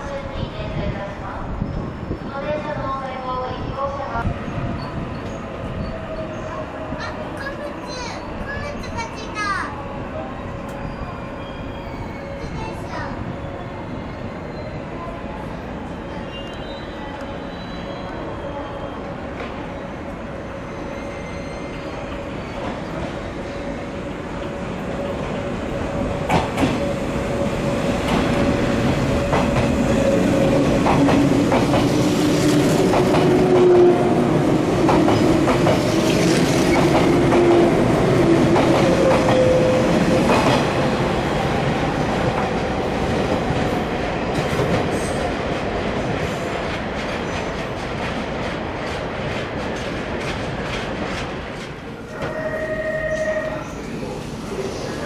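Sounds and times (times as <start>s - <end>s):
electric train passing: 0.0s - 55.0s.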